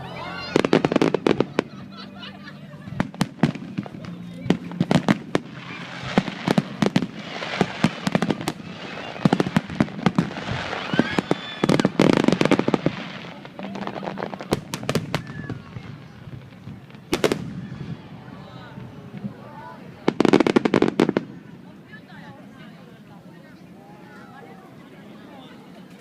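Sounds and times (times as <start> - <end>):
fireworks crackling: 0.0 - 22.6
fireworks bangs and pops: 2.9 - 18.0, 20.0 - 21.5.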